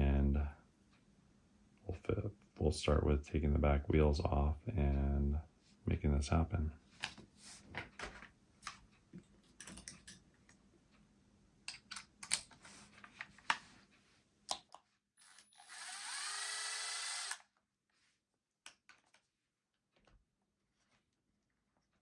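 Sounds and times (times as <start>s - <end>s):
electric screwdriver whirring: 15.2s - 17.5s.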